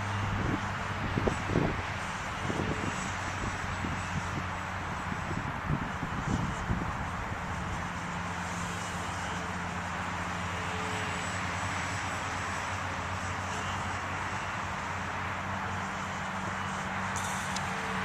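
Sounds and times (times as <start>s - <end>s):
small electric motor buzzing: 0.0s - 18.0s.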